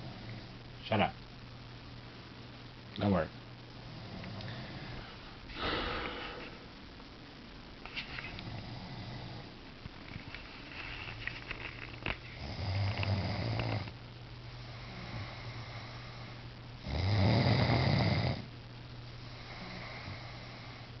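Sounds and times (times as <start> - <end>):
man snoring loudly: 12.4 - 13.9, 16.8 - 18.5.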